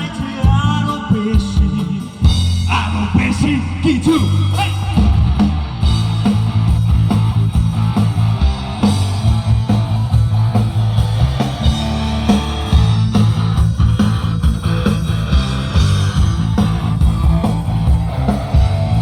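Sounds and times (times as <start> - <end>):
guitar: 0.0 - 19.0
live rock band instrumental: 0.0 - 19.0
pulsing bass line: 0.0 - 19.0.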